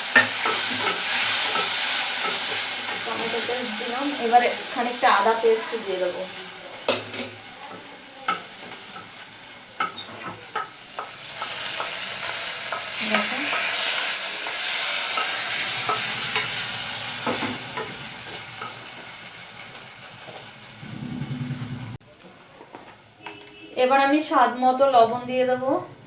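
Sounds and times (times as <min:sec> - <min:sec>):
spatula tapping pan: 0:00.0 - 0:03.5, 0:06.8 - 0:20.5
paste sizzling in hot oil: 0:00.0 - 0:20.8.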